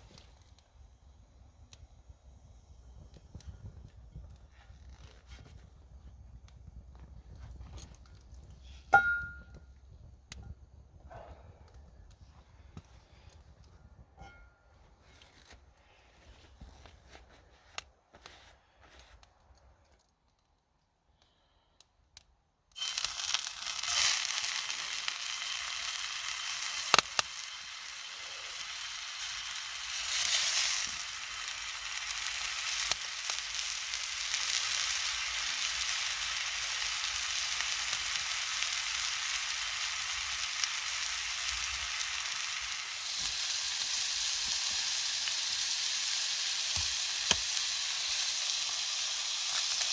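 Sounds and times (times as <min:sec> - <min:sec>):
fire hissing and crackling: 0:00.0 - 0:14.0, 0:22.7 - 0:49.9
fire starter clicks: 0:46.7 - 0:48.2.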